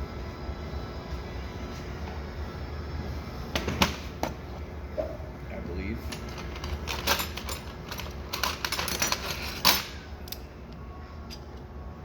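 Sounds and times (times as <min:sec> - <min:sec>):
metal tools clicking and clacking: 0:06.1 - 0:10.5.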